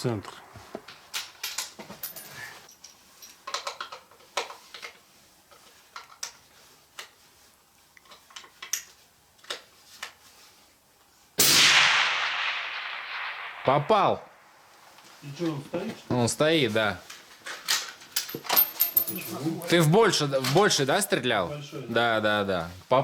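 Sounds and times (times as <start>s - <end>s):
rifle shot: 11.4s - 14.7s.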